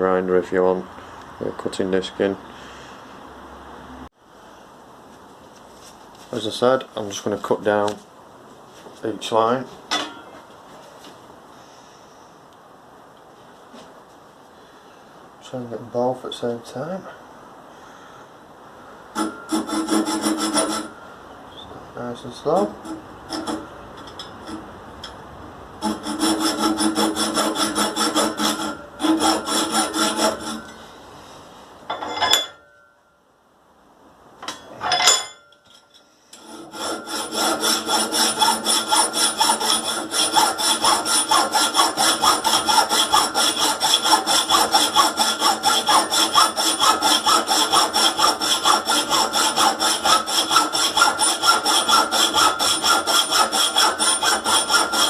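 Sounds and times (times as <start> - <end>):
hacksaw cutting metal pipe: 19.2 - 21.0, 22.6 - 24.6, 25.8 - 30.8, 36.4 - 55.0.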